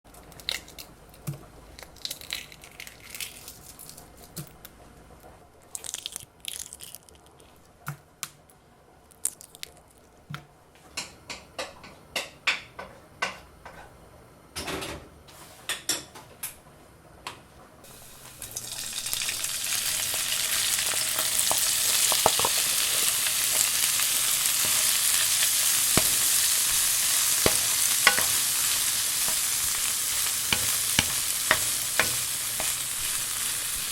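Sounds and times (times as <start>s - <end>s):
pops and crackles of frying: 0.1s - 4.7s, 5.6s - 8.0s, 17.9s - 33.9s
light kitchen clicks and knocks: 10.3s - 16.6s
food sizzling in a pan: 17.8s - 33.9s.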